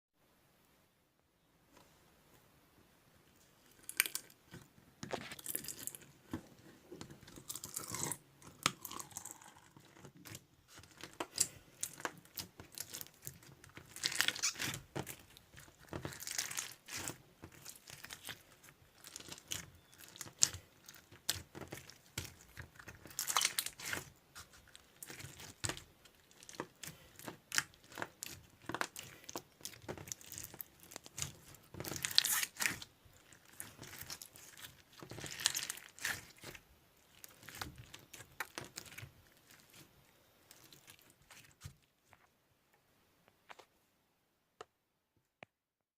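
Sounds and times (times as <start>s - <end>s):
crunchy slime crackling: 7.2s - 41.9s.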